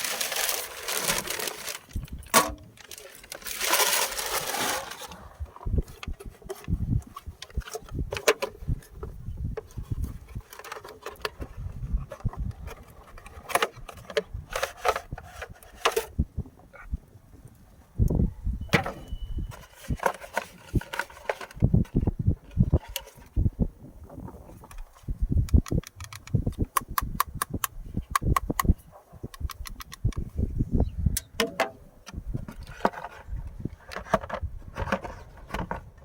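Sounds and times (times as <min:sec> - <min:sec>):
clicks and knocks of handling: 0:05.9 - 0:16.1, 0:18.7 - 0:23.4, 0:24.5 - 0:28.7, 0:31.2 - 0:36.0.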